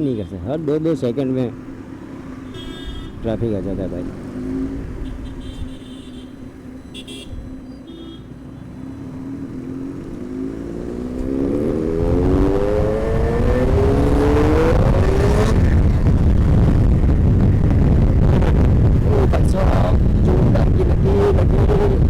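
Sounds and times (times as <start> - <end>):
motorcycle engine revving: 2.2 - 6.1, 8.8 - 22.0
wind noise rushing: 11.2 - 22.0.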